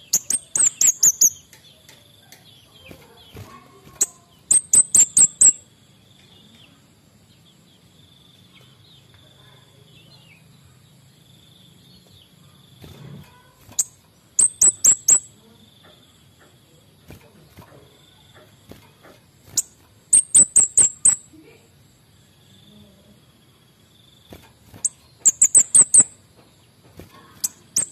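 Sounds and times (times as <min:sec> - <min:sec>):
bird high sharp chirps: 0:00.0 - 0:01.9, 0:02.6 - 0:05.7, 0:12.8 - 0:15.4, 0:19.4 - 0:21.3, 0:24.2 - 0:26.3, 0:27.0 - 0:27.9.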